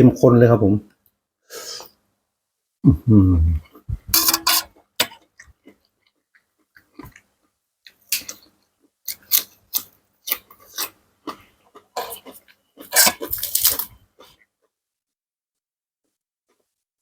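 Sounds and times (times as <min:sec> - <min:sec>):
chewing and wet mouth sounds: 0:04.7 - 0:14.5.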